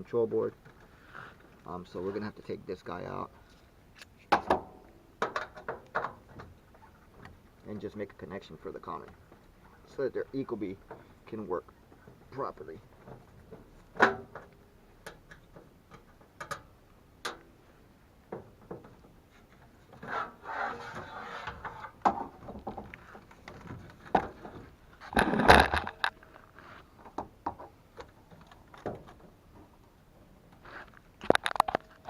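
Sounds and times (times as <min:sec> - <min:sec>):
scraping: 0:19.3 - 0:26.9.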